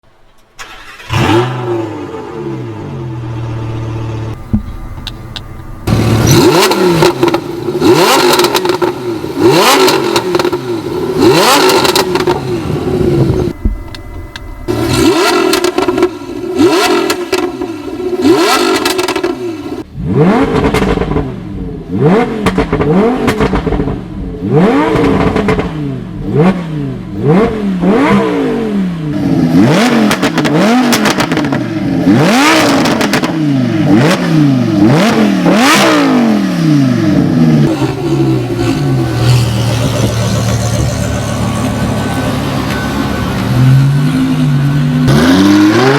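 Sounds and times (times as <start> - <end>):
sports car engine revving: 0.7 - 45.9
exhaust crackles and pops: 20.4 - 21.2, 22.4 - 24.0.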